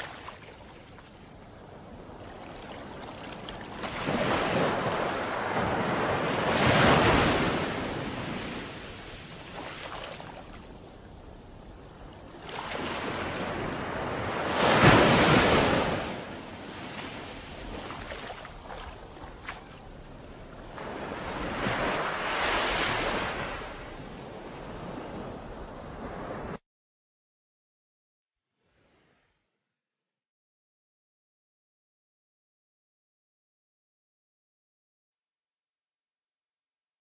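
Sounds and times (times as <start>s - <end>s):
ocean waves crashing: 1.6s - 26.6s.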